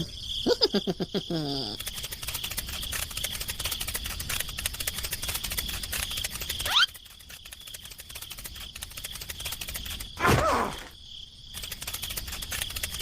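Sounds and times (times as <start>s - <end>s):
crickets chirring: 0.0s - 13.0s.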